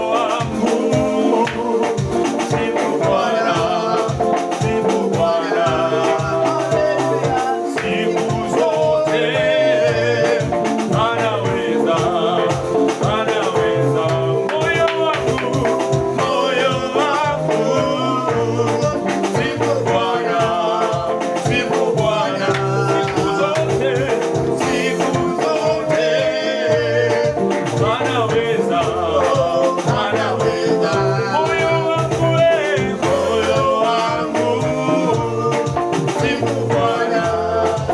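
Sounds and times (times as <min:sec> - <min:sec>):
band with driving beat: 0:00.0 - 0:37.9
person singing: 0:00.0 - 0:37.9.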